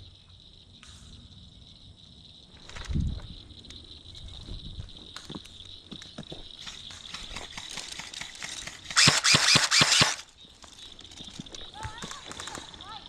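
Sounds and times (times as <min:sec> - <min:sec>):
crickets chirping: 0:00.0 - 0:13.0.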